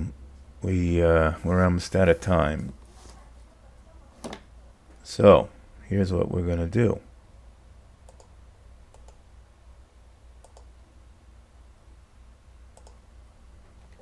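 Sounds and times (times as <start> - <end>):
low steady hum: 0.0 - 14.0
computer mouse clicks: 8.1 - 8.3, 8.9 - 9.2, 10.4 - 10.7, 12.7 - 13.0.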